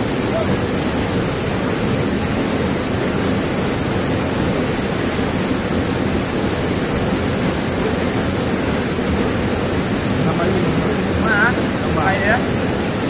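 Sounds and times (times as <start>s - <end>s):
waterfall and river rushing: 0.0s - 13.0s.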